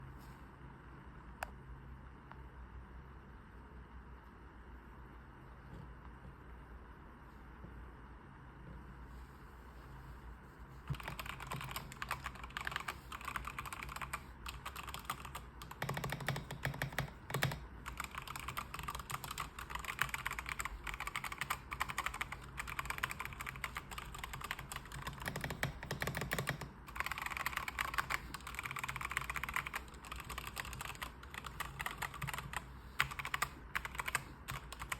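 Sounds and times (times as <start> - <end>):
mechanical keyboard typing: 10.9 - 34.9.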